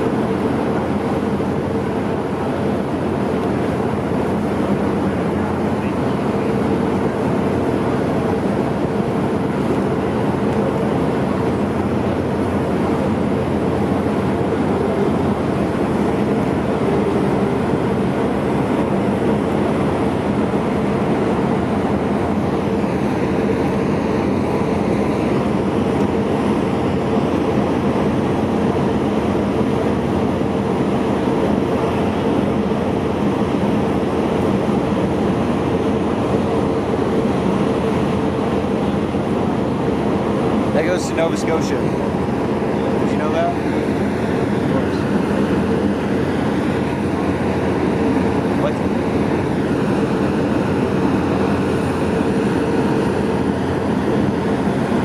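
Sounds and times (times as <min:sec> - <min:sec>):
ship machinery drone: 0:00.0 - 0:55.0.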